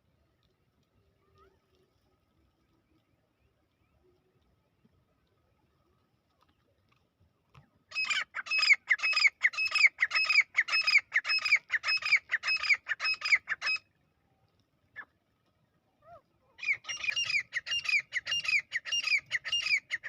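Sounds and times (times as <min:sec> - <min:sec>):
partridge calling shrill notes: 0:07.9 - 0:13.8, 0:16.6 - 0:20.0.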